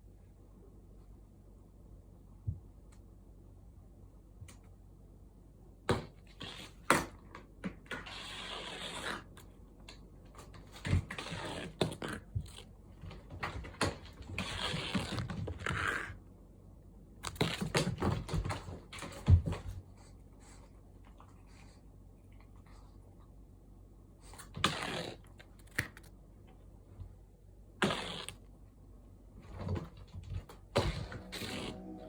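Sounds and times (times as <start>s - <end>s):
cats rustling and scrabbling: 10.2s - 16.2s, 17.3s - 23.0s, 29.4s - 32.0s.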